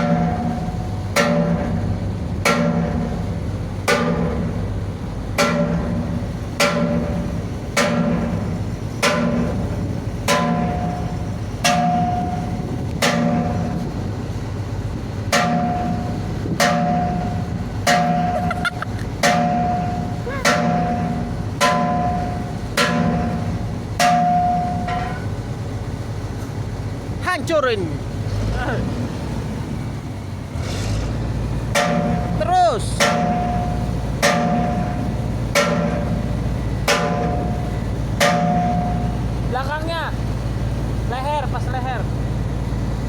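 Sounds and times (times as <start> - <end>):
hammer striking sheet metal: 1.2 - 1.7, 5.4 - 6.0, 6.6 - 7.2, 9.0 - 9.6, 10.3 - 11.0, 11.6 - 12.4, 13.0 - 13.6, 15.3 - 16.0, 17.9 - 18.4, 19.2 - 23.4, 24.0 - 25.2, 31.7 - 32.4, 33.0 - 35.0, 35.6 - 36.2, 36.9 - 37.5, 38.2 - 38.9.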